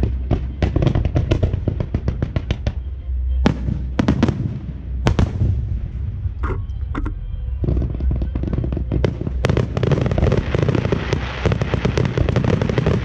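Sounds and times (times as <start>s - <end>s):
firework bangs: 0.0s - 13.0s
fireworks cracking: 0.0s - 13.0s.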